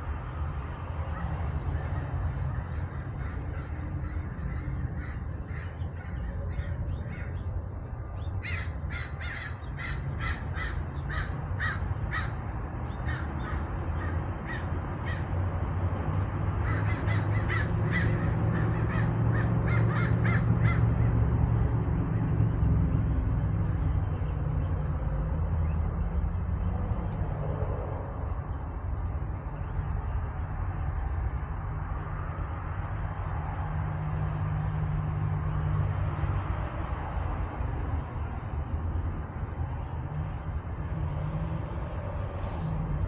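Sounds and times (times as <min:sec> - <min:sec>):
crows cawing: 0:01.1 - 0:07.5, 0:08.4 - 0:15.4, 0:16.6 - 0:21.1.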